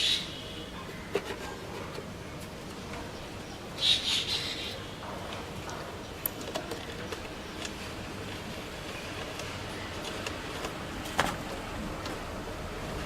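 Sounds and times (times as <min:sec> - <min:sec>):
bird chirping: 0:03.1 - 0:04.9.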